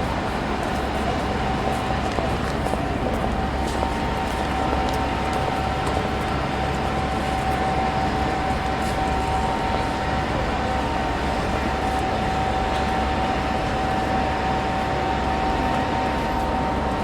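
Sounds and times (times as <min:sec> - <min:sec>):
constant high hum: 0:00.0 - 0:17.0
rumble of trains: 0:00.0 - 0:17.0.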